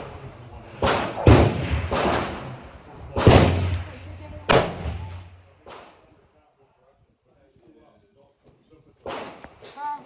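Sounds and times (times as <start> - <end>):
echoing gunshots: 0.0 - 6.0.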